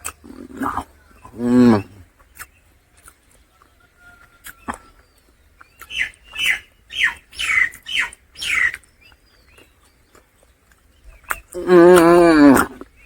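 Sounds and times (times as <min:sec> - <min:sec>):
animal harsh calls: 0:00.2 - 0:02.1, 0:05.9 - 0:08.8.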